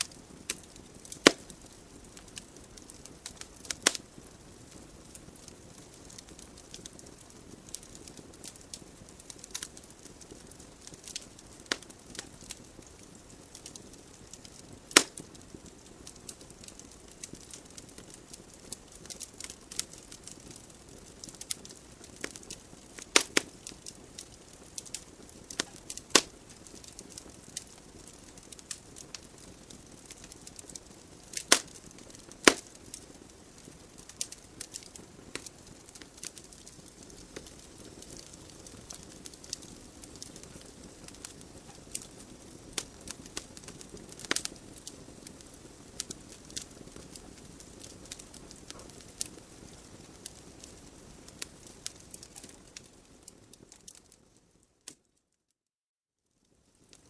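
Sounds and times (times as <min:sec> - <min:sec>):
flames hissing: 0:00.0 - 0:52.6
logs crackling and popping: 0:00.0 - 0:55.2, 0:56.6 - 0:57.0.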